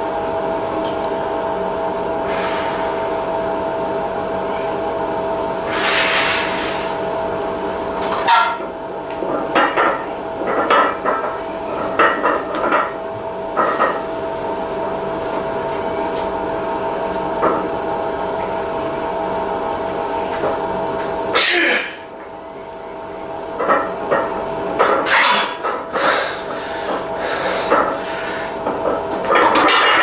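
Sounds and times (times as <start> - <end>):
steady background hum: 0.0 - 30.0
weight plates clanking: 8.2 - 8.6, 23.6 - 30.0.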